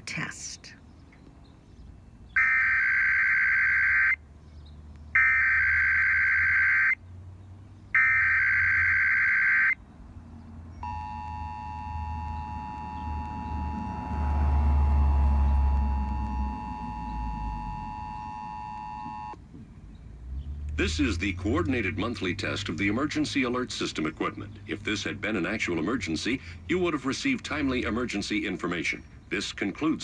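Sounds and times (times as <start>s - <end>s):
two-tone attention signal: 10.8s - 19.4s
low rumble: 11.1s - 18.5s.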